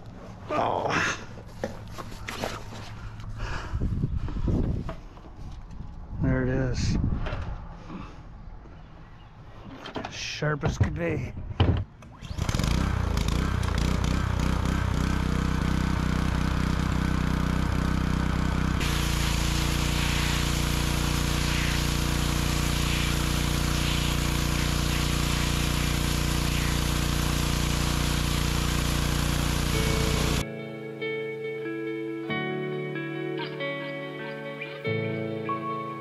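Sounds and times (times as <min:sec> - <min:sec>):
pressure washer motor hum: 0:12.0 - 0:30.4
water jet hissing: 0:18.8 - 0:30.4.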